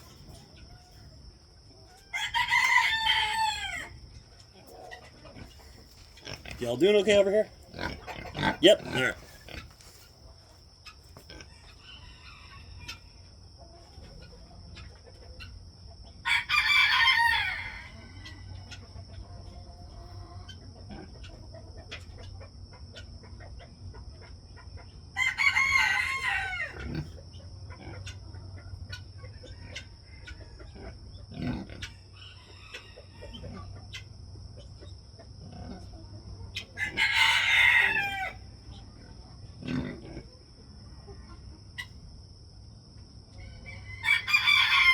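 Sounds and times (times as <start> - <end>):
hens clucking: 0.0 - 44.9
rooster crowing: 2.0 - 4.0, 11.4 - 13.1, 16.2 - 18.6, 25.2 - 27.0, 36.8 - 38.5, 43.4 - 44.9.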